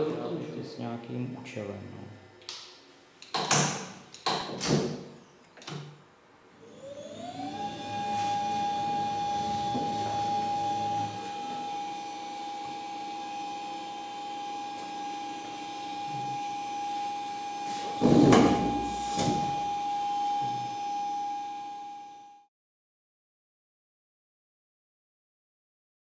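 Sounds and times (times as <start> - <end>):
milling machine spindle whine: 6.6 - 22.4.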